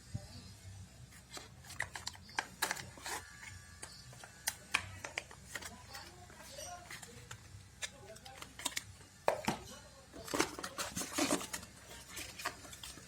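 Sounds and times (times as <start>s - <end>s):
packaging rustling: 10.2s - 13.0s.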